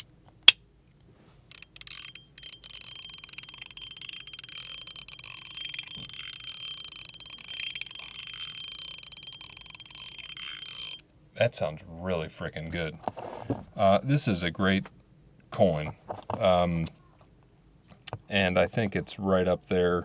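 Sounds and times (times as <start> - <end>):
high metallic clicks: 1.5 - 11.0
thin ringing ping: 1.5 - 11.0.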